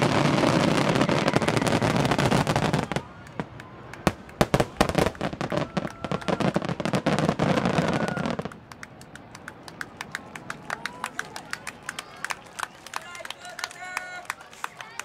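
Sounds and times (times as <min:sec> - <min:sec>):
fireworks booms and crackling: 0:00.0 - 0:08.7.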